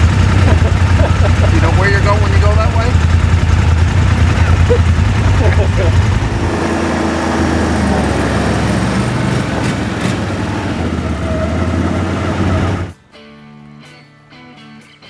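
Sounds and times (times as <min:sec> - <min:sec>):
vehicle engine running: 0:00.0 - 0:13.0
wide rushing noise: 0:02.8 - 0:13.0.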